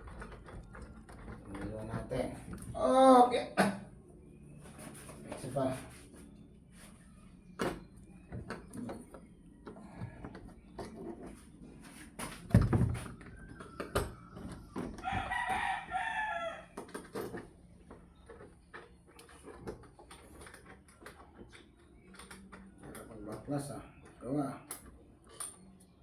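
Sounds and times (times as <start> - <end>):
rooster crowing: 15.0 - 16.8.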